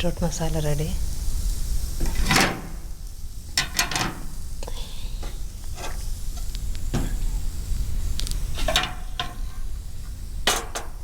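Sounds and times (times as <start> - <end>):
kitchen scrape: 2.0 - 2.8, 3.6 - 4.4, 5.2 - 7.4, 8.4 - 9.8.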